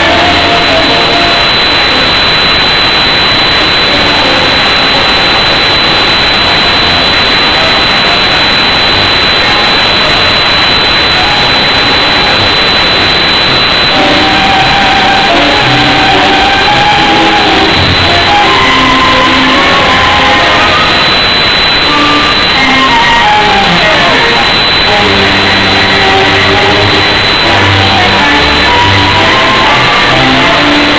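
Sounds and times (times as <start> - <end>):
tango music: 0.0 - 1.4, 13.9 - 30.9
loud distorted noise roar: 0.0 - 30.9.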